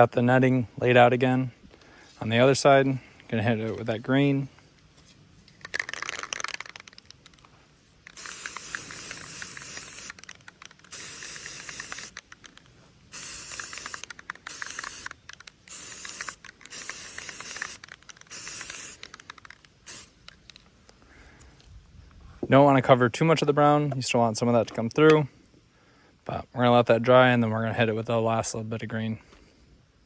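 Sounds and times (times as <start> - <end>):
aerosol spray can hissing: 8.1 - 12.4, 13.1 - 20.2.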